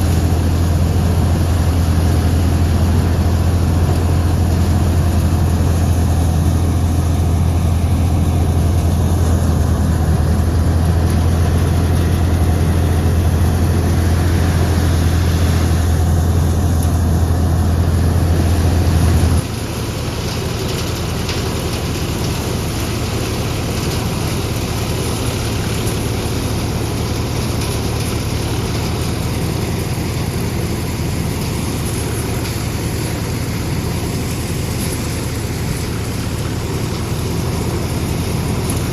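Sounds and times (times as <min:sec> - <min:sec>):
tractor diesel engine droning: 0:00.0 - 0:38.9.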